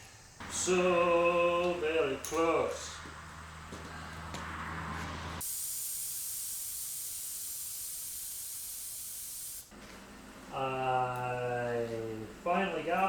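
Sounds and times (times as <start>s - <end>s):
compressed air hissing: 5.1s - 9.7s.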